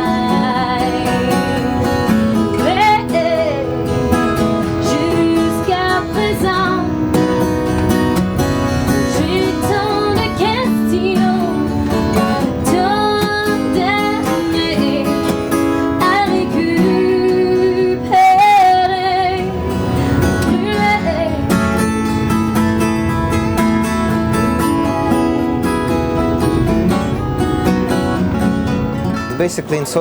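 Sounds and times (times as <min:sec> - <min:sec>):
woman singing: 0:00.0 - 0:07.7, 0:08.8 - 0:22.4
strummed acoustic guitar: 0:00.0 - 0:30.0.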